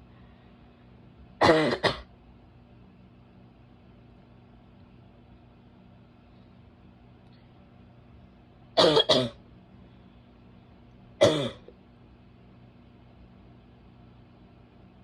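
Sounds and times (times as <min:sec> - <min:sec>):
woman coughing: 0:01.4 - 0:02.1, 0:08.8 - 0:09.4, 0:11.2 - 0:11.7.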